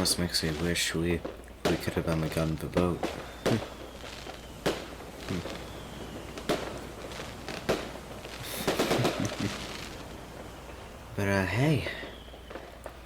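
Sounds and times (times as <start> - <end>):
firework crackling: 0.0 - 13.0
fireworks banging: 0.0 - 13.0
firework falling whistle: 2.8 - 13.0.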